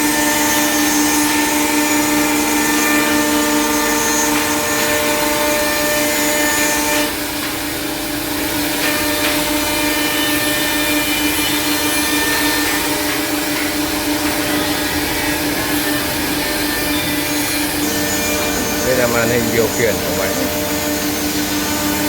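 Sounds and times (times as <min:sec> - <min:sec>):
mortising machine spindle whine: 0:11.0 - 0:22.0.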